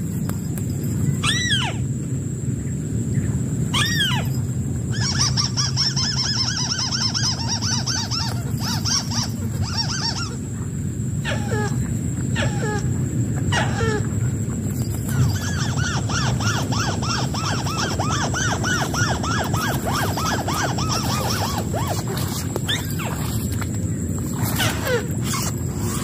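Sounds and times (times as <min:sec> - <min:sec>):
steady low rumble: 0:00.0 - 0:26.0
bird nasal chattering calls: 0:04.9 - 0:10.6, 0:15.0 - 0:23.2
bird downward-sliding calls: 0:15.1 - 0:23.5.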